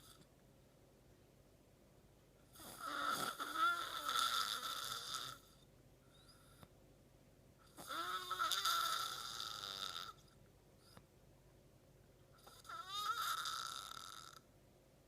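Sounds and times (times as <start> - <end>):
man snoring: 2.6 - 5.4, 7.8 - 10.2, 12.4 - 14.4.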